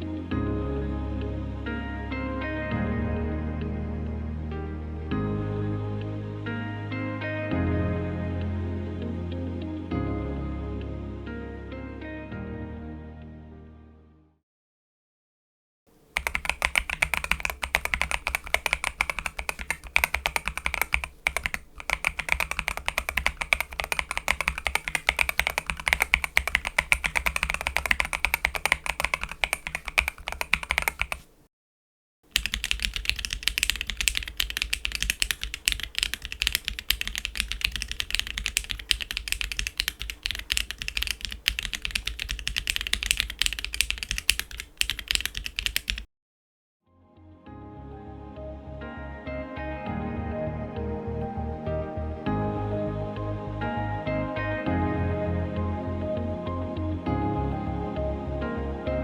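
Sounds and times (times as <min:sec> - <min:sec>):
mechanical keyboard typing: 0:16.1 - 0:31.4, 0:32.3 - 0:46.1.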